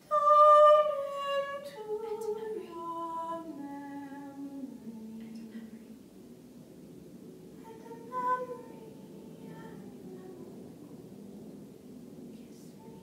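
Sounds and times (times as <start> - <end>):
person singing unaccompanied: 0.0 - 6.0, 7.6 - 10.7, 12.4 - 13.0.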